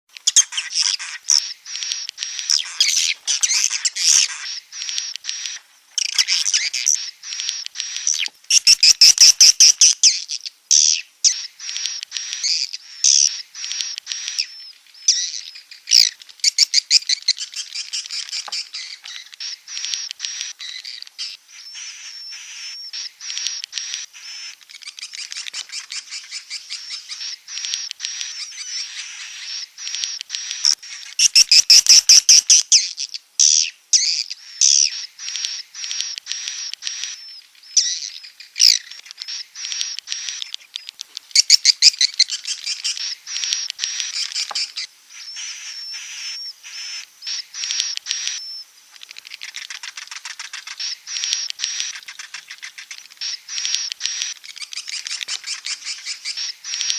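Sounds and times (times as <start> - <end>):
swiftlets twittering: 0.2 - 33.0.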